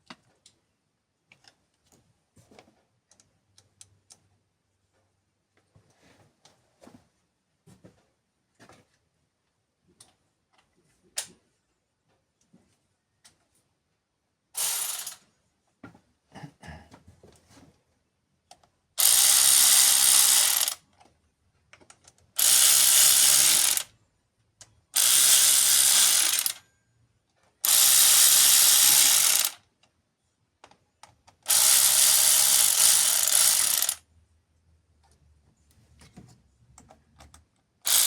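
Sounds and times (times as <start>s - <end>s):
electric power tool motor: 14.6s - 15.2s, 19.0s - 20.8s, 22.4s - 23.9s, 25.0s - 26.6s, 27.6s - 29.6s, 31.5s - 34.0s.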